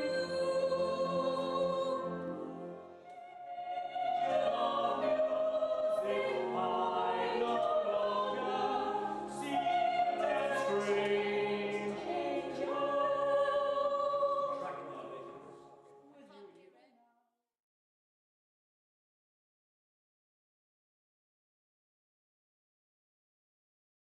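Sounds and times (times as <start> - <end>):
vocal ensemble singing in harmony: 0.0 - 15.9.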